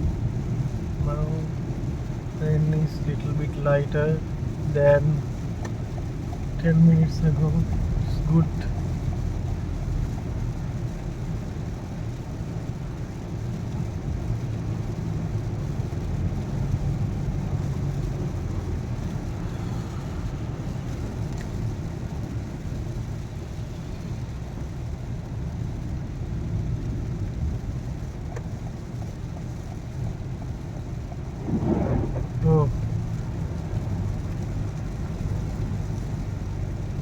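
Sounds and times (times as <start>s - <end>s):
car engine rumble: 0.0s - 37.0s
tyres on wet road: 0.0s - 37.0s.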